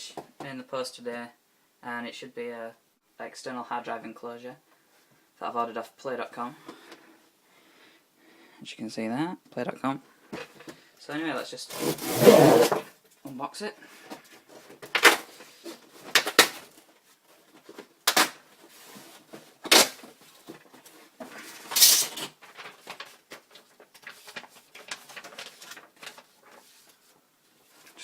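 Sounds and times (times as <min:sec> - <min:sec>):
packaging ripping: 0:11.7 - 0:12.8, 0:16.1 - 0:16.7, 0:18.0 - 0:18.4, 0:19.7 - 0:20.0, 0:21.6 - 0:26.2
packaging crinkling and rustling: 0:14.4 - 0:27.1.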